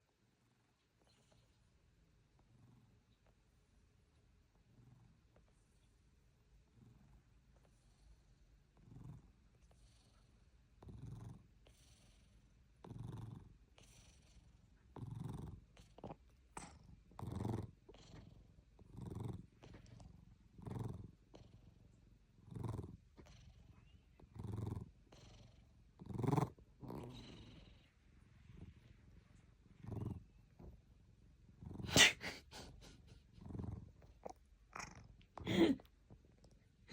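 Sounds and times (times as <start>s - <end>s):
pet snoring: 7.7s - 21.7s, 22.4s - 23.6s, 24.3s - 27.9s, 29.8s - 30.7s, 33.4s - 35.8s.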